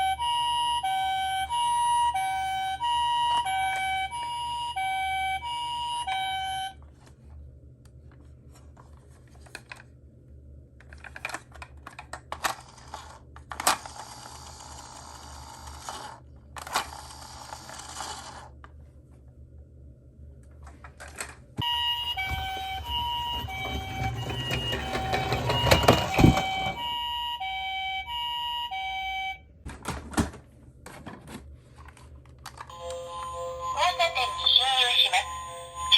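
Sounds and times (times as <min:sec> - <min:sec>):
two-tone siren: 0:00.0 - 0:06.8, 0:21.6 - 0:29.4, 0:32.7 - 0:35.9
toy cars rattling and clicking: 0:10.8 - 0:18.5.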